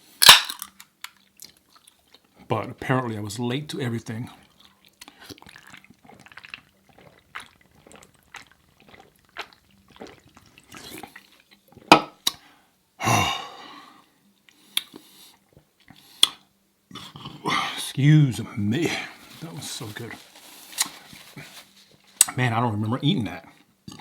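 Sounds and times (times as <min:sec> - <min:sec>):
wet chewing and lip-smacking: 0:00.8 - 0:02.4, 0:04.4 - 0:12.4.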